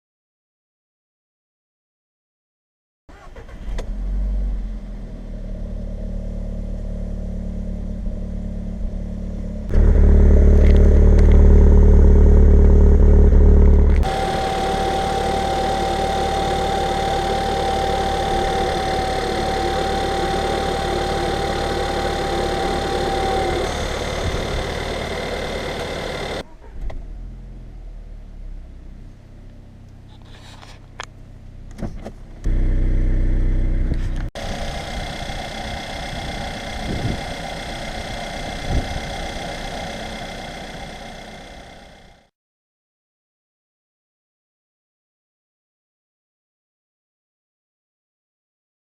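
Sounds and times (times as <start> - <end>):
car engine idling: 4.6 - 42.3
steady high tone: 14.0 - 26.4.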